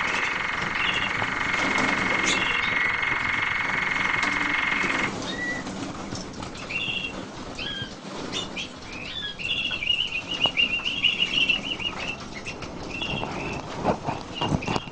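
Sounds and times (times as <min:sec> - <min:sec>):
scattered clicks: 0:00.0 - 0:05.2
small birds chirping: 0:00.0 - 0:05.7, 0:06.6 - 0:13.6
wing flutters: 0:00.0 - 0:08.8.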